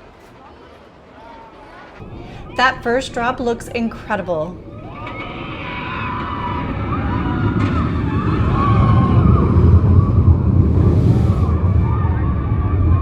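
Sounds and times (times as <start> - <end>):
roller coaster rumbling on track: 0.0 - 13.0
people screaming: 1.2 - 13.0.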